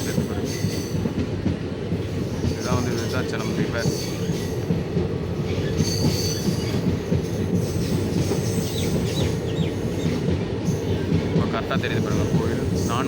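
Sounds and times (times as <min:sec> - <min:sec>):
train wheels rumbling: 0:00.0 - 0:13.0
high wheel squeal: 0:05.5 - 0:06.8.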